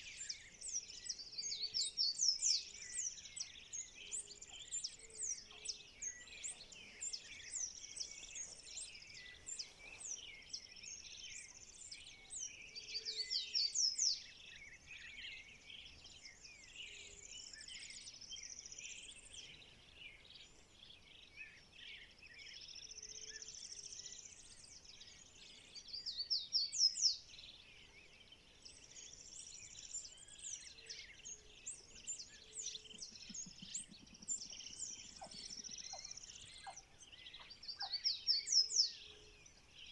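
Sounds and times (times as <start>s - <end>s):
birds chirping and whistling: 29.3s - 39.9s.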